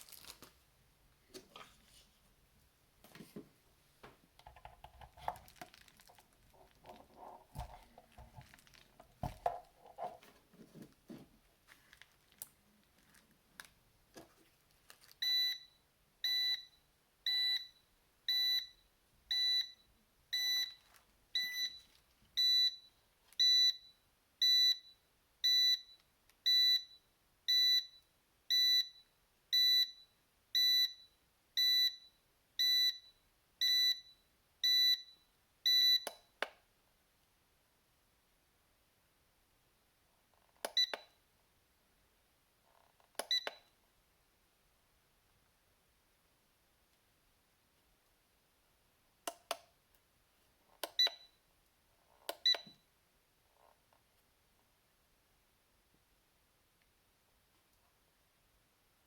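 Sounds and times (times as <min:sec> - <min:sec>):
handling and rustling: 0:00.0 - 0:00.6, 0:03.0 - 0:15.2.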